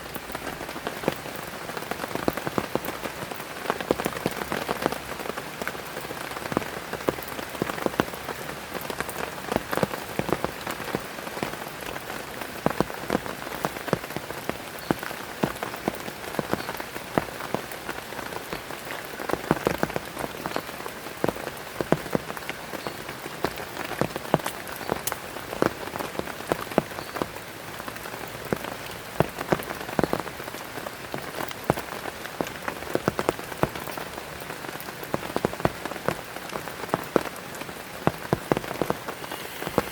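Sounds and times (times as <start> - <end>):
heavy rain falling: 0.0 - 39.9
raindrops striking a surface: 0.0 - 39.9.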